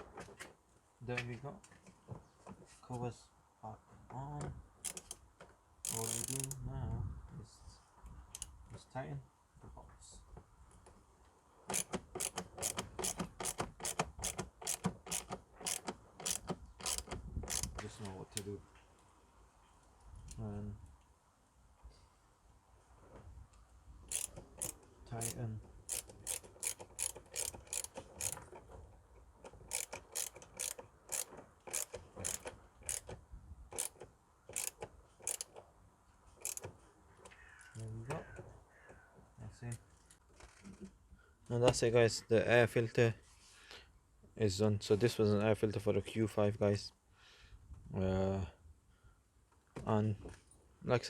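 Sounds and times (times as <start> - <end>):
hand ratchet clicking: 4.8 - 5.2, 5.8 - 6.6, 11.7 - 17.8, 24.1 - 28.4, 29.4 - 35.6, 36.4 - 36.7.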